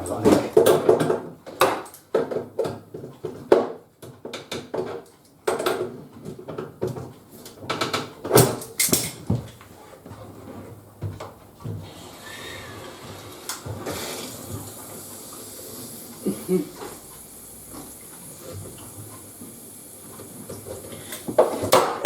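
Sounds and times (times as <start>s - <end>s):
objects knocking and clattering: 0.0s - 11.8s, 20.5s - 22.0s.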